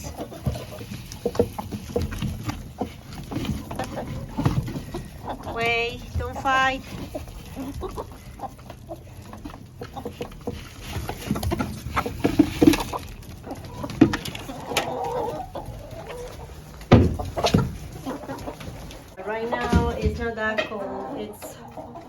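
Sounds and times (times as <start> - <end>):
chickens clucking: 0.0 - 22.0
loud thumps: 16.9 - 17.8.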